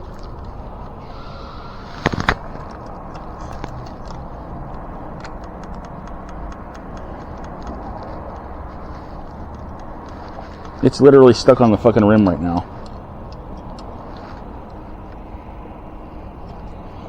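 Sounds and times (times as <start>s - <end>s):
bicycle spokes clicking: 0.0s - 16.9s
faint light ticks: 2.3s - 15.4s.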